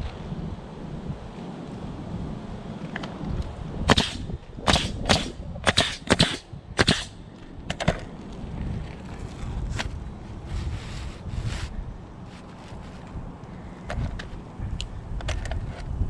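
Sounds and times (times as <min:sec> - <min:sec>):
wind on microphone: 0:00.0 - 0:16.0
nails driven into shingles: 0:03.9 - 0:08.0.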